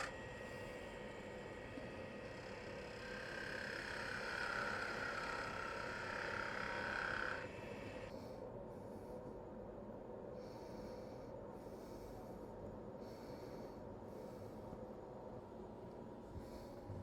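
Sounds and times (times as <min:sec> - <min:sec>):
lathe humming: 0:00.0 - 0:08.1.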